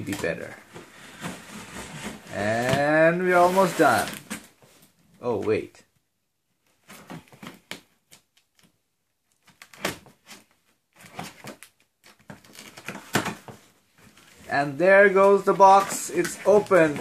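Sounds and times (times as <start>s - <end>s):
packing tape rustling: 11.0s - 13.4s.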